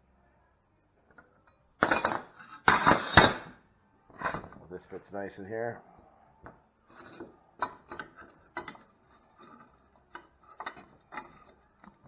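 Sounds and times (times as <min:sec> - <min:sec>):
metal parts clicking and scraping: 0:06.9 - 0:12.0.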